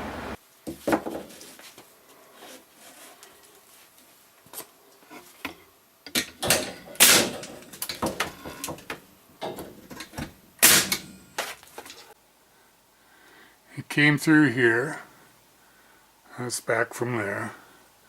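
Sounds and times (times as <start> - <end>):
knocks and clatters of handling: 4.5 - 12.2.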